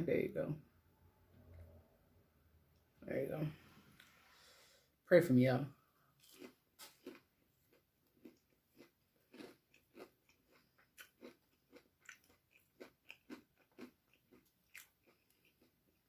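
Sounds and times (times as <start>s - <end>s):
person chewing: 6.2s - 16.0s.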